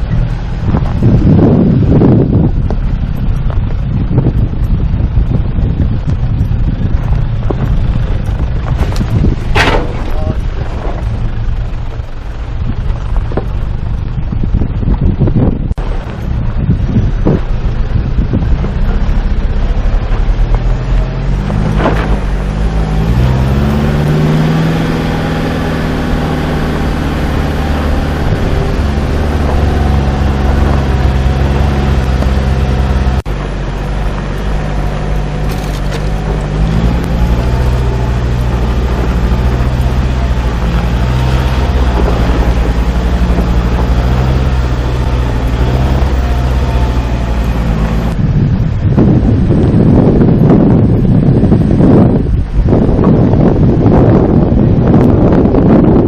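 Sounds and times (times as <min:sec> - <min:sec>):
engine running at low revs: 0:00.0 - 0:56.0.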